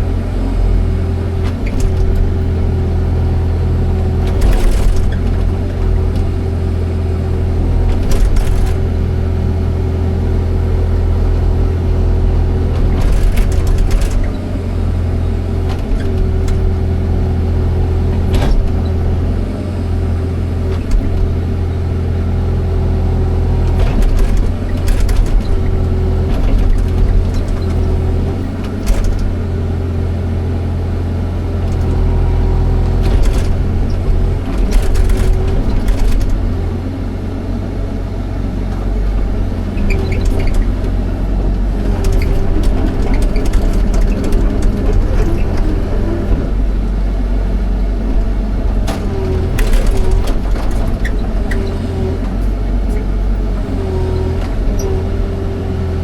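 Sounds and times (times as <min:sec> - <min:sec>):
excavator diesel engine running: 0:00.0 - 0:56.0
machine clanks and knocks: 0:12.8 - 0:14.5, 0:32.9 - 0:37.0, 0:48.1 - 0:53.2.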